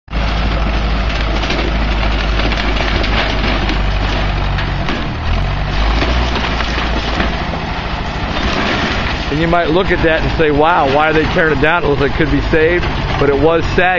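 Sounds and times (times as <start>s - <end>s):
heavy machine engine running: 0.1s - 13.9s
timber cracking and splintering: 0.6s - 7.7s.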